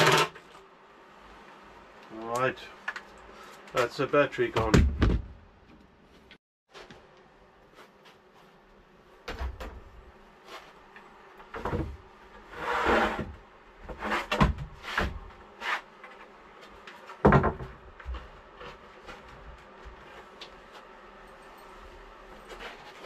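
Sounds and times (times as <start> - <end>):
wood and tools knocking: 17.2 - 18.3.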